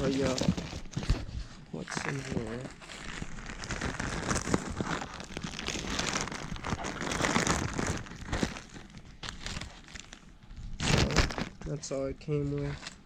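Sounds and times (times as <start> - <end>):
plastic packaging crinkling: 0.0 - 13.0.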